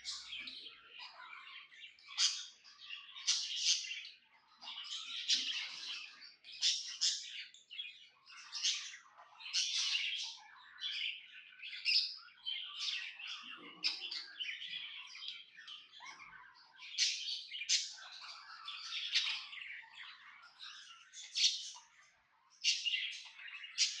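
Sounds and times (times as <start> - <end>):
budgerigar chirping and chattering: 0.1 - 4.0, 5.0 - 7.4, 15.8 - 21.9, 22.6 - 24.0.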